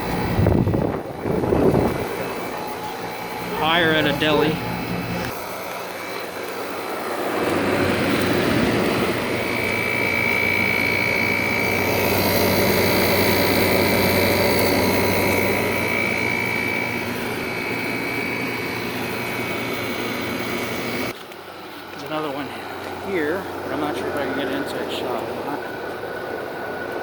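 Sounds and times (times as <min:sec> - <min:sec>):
high whine: 0:00.0 - 0:21.1
low hum: 0:00.0 - 0:21.1
air conditioner fan running: 0:00.0 - 0:27.0.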